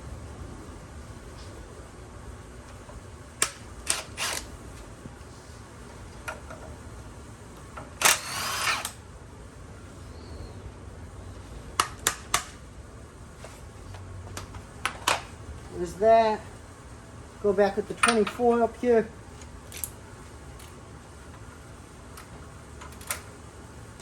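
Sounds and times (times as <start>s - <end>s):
rasping tool burst: 3.9s - 4.5s, 8.0s - 9.0s.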